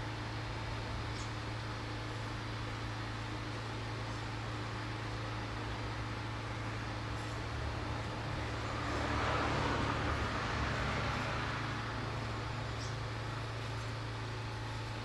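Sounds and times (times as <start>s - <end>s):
vehicle passing by: 7.7s - 13.8s.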